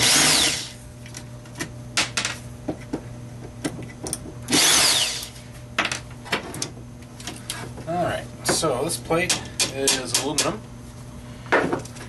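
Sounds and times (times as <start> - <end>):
power drill whining in bursts: 0.0 - 0.8, 4.5 - 5.4.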